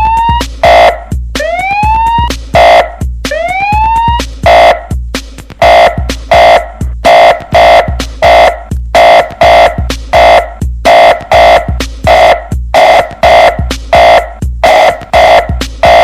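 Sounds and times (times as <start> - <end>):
electronic siren sweeping up: 0.0 - 4.9, 5.6 - 16.0
booming bass kick: 0.0 - 16.0
loud horn stabs: 5.6 - 16.0.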